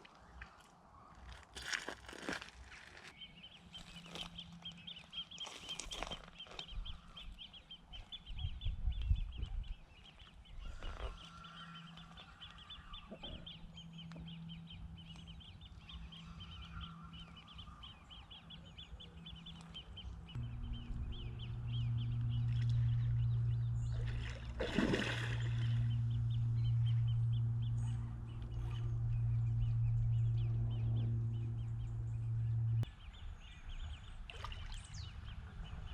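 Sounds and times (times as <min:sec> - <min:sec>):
low hum: 0:11.1 - 0:33.1.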